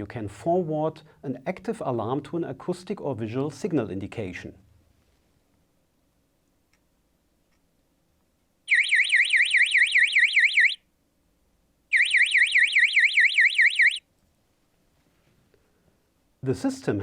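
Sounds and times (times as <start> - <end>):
warbling electronic alarm: 8.7 - 10.8, 11.9 - 14.0.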